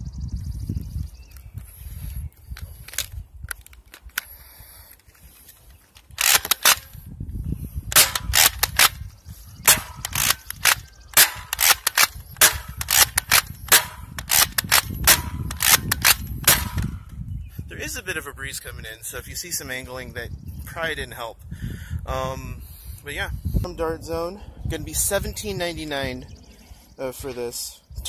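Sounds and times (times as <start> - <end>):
toy blaster pumping and firing: 6.2 - 7.0, 7.9 - 9.0, 9.7 - 16.9.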